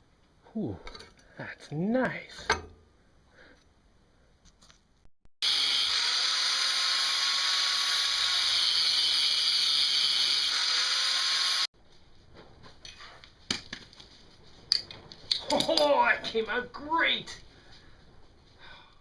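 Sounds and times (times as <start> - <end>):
power grinder grinding steel: 5.4 - 11.7.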